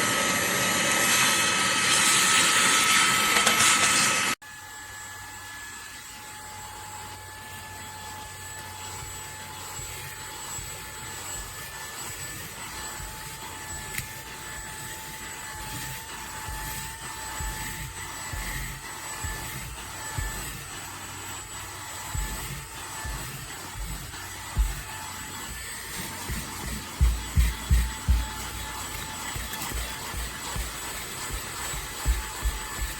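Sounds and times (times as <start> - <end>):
handheld vacuum whining: 0.0 - 32.9
low bumps from handling: 26.2 - 32.9.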